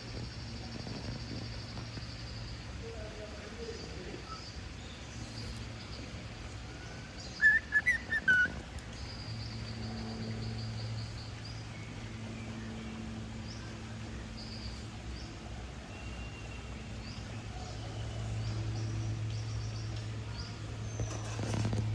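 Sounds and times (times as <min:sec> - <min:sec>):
steady low hum: 0:00.0 - 0:21.9
cockatiel chirping and whistling: 0:07.4 - 0:08.6.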